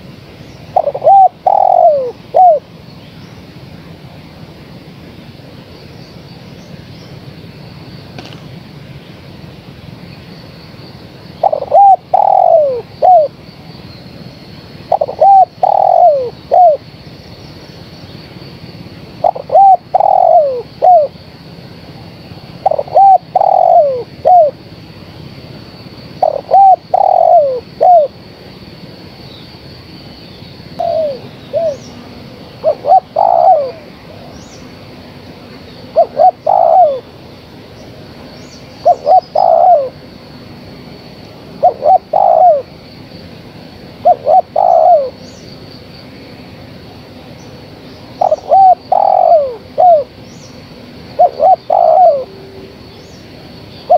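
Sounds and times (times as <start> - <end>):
dove cooing: 0.7 - 2.7, 11.4 - 13.4, 14.9 - 16.9, 19.2 - 21.2, 22.6 - 24.6, 26.2 - 28.2, 30.8 - 31.9, 32.6 - 34.4, 35.9 - 37.1, 38.8 - 40.1, 41.6 - 42.8, 44.0 - 45.2, 48.1 - 50.2, 51.2 - 52.8.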